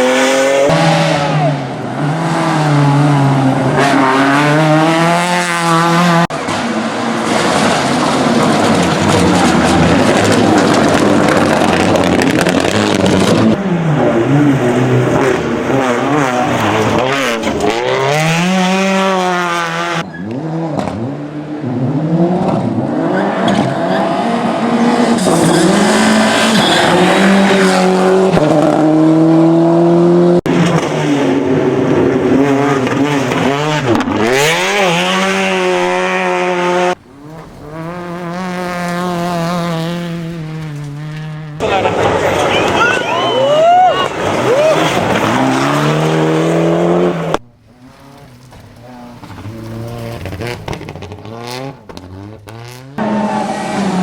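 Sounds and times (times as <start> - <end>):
rally car engines revving: 0.0 - 54.0
tyre squeal: 25.2 - 27.7.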